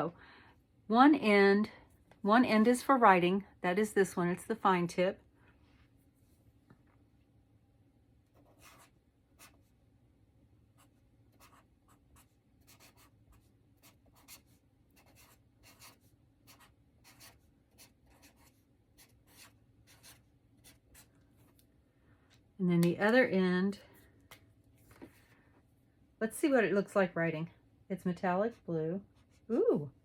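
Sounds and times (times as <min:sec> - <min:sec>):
marker scratching on paper: 0:08.3 - 0:09.7, 0:10.8 - 0:21.1.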